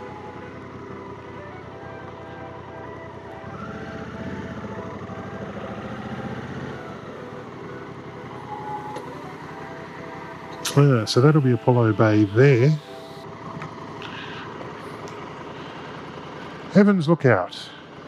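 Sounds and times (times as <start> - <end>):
motorcycle engine running: 3.4 - 8.4.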